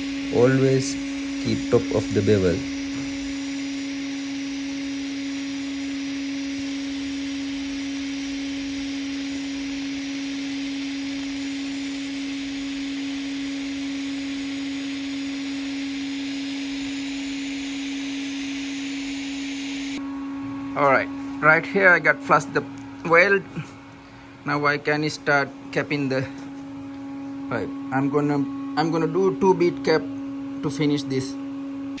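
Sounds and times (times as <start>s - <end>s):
welding arc hissing: 0.0s - 20.0s
constant hum: 19.8s - 32.0s.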